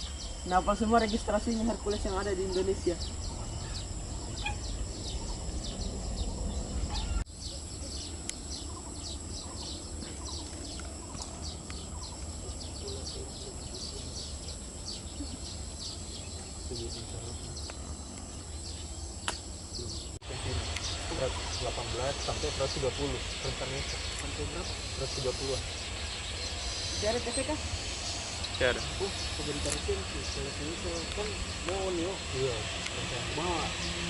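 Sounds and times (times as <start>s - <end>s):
small birds chirping: 0.0s - 34.0s
low rumble: 1.5s - 7.3s.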